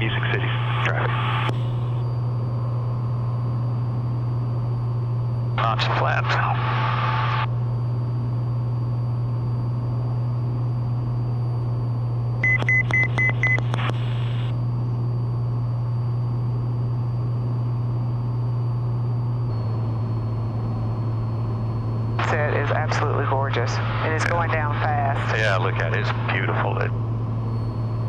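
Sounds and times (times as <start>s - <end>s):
aircraft engine drone: 0.0s - 2.1s, 19.3s - 28.0s.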